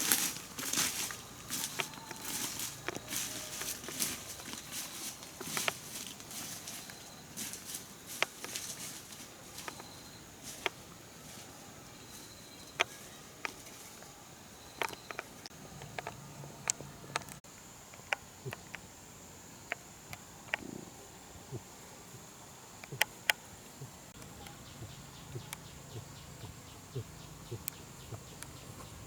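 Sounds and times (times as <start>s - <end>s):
insect drone: 0.0s - 29.0s
sharp clicks and taps: 14.8s - 17.4s.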